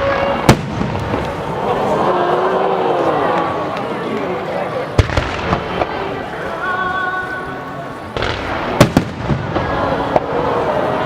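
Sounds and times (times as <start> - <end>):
fireworks bursting with sharp bangs: 0.0 - 1.7, 4.9 - 6.5, 7.9 - 11.0.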